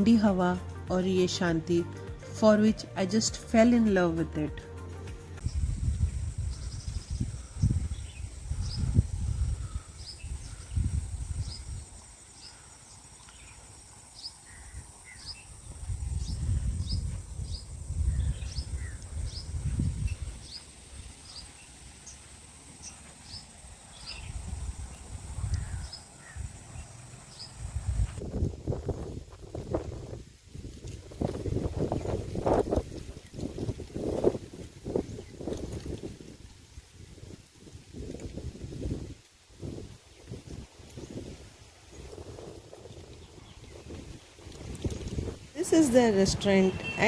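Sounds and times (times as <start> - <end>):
wind buffeting microphone: 5.4 - 12.6, 14.5 - 21.4, 23.9 - 47.0
small birds chirping: 5.4 - 28.4, 40.2 - 47.0.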